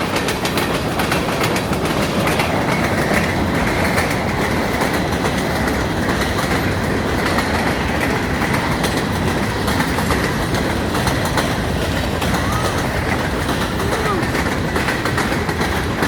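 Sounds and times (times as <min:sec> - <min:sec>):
rail joint clicks: 0:00.0 - 0:16.0
train cars rolling past: 0:00.0 - 0:16.0.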